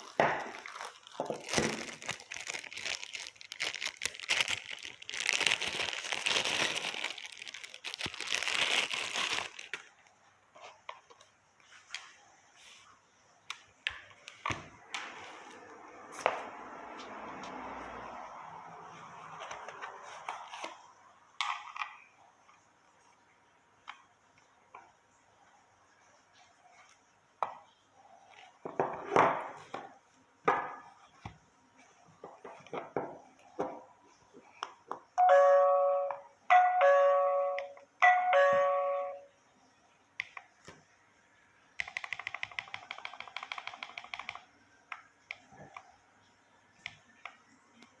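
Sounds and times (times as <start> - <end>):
doorbell chiming: 35.2 - 39.2.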